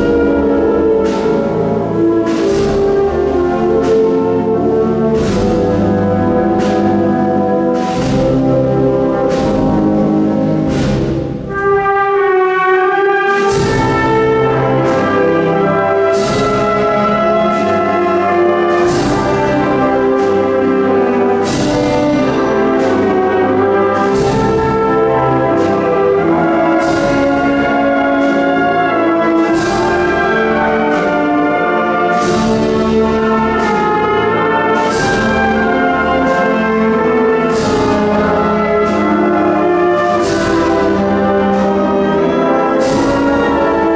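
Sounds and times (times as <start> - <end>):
brass sustained chords: 0.0 - 43.9
percussion strikes: 0.0 - 43.9.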